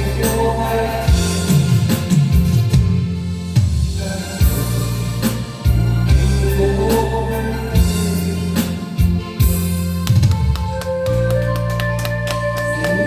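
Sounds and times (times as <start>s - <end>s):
keyboard melody: 0.0s - 13.0s
sustained bass line: 0.0s - 13.0s
drum beat: 9.0s - 13.0s.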